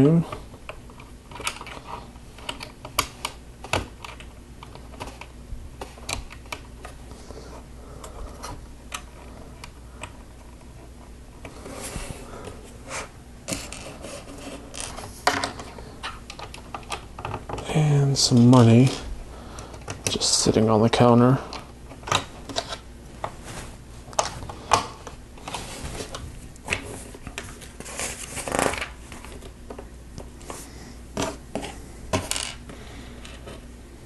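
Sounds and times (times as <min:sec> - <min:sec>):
plastic pieces clicking: 0:00.7 - 0:07.0.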